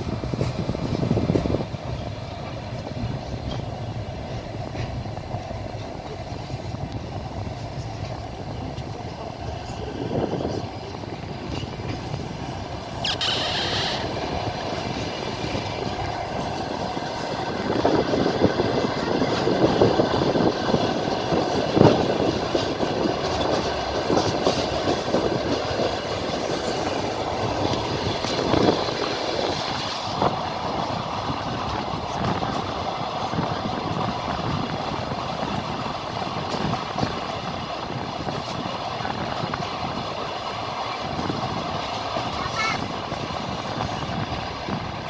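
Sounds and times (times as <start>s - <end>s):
train wheels rumbling: 0.0s - 45.0s
high-pitched wheel squeal: 13.0s - 14.2s.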